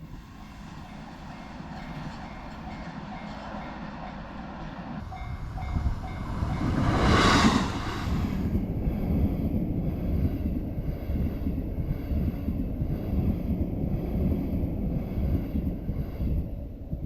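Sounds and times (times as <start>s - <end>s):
train rumbling past: 0.0s - 17.0s
wind noise on microphone: 5.0s - 17.0s.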